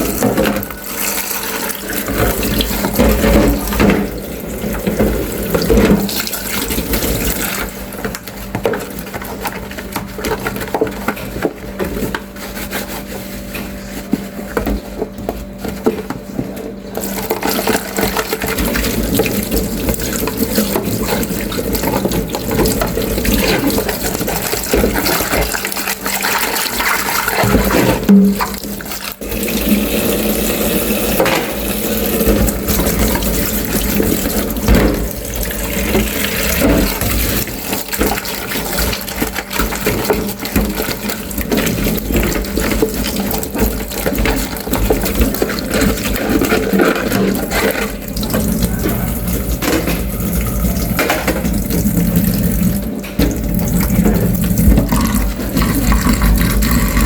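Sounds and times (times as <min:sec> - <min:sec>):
tap water splashing into sink: 0:17.0 - 0:57.0.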